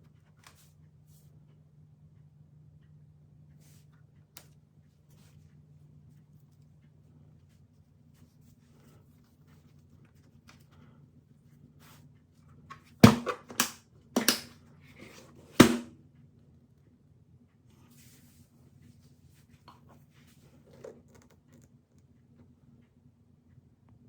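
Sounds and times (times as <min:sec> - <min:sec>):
faint steady hum: 0:00.0 - 0:24.0
sharp handling clicks and knocks: 0:12.7 - 0:15.9.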